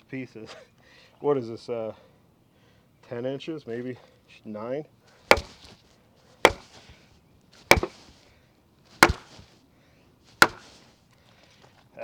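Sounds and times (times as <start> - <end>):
axe striking wood: 5.3 - 5.8, 6.5 - 6.9, 7.7 - 8.2, 9.0 - 9.4, 10.4 - 10.8.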